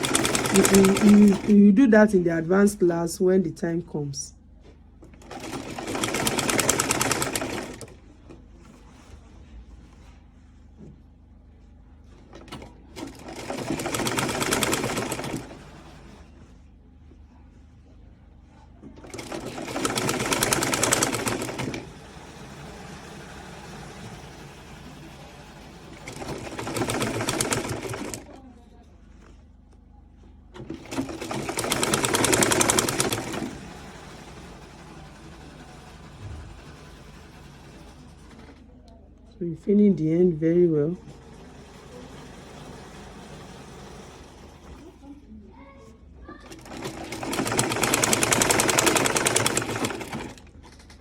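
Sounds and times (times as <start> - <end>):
sewing machine stitching: 0.0 - 2.8, 5.0 - 8.1, 12.1 - 16.5, 18.9 - 28.4, 30.5 - 38.7, 40.9 - 45.1, 46.3 - 51.0
low hum: 36.1 - 37.0.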